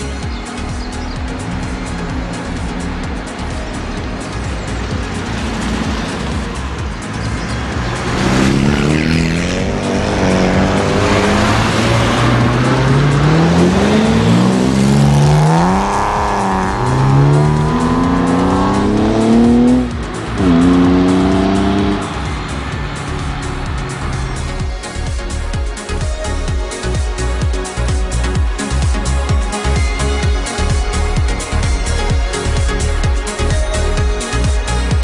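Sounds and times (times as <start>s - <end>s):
car engine accelerating hard: 0.0s - 35.0s.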